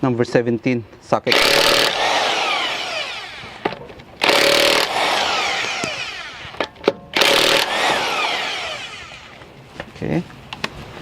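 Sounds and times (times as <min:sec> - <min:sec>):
impact wrench bursts: 0:01.3 - 0:09.4.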